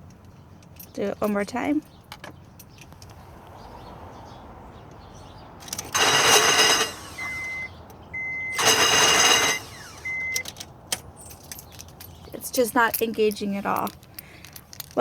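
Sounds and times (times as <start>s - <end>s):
starter motor grinding: 5.7s - 10.4s
high beep: 7.1s - 8.7s, 9.5s - 10.4s.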